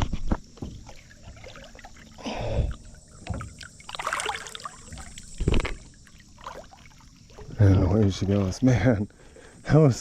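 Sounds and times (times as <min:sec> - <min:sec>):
water splashing beside a boat: 0:00.0 - 0:09.6.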